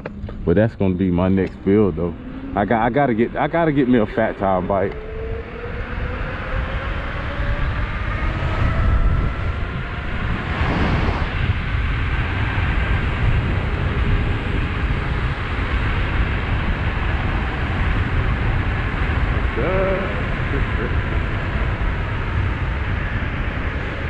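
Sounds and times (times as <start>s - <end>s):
road rumble: 0.0s - 24.0s
wind: 0.0s - 24.0s
electric motor whine: 1.3s - 11.8s.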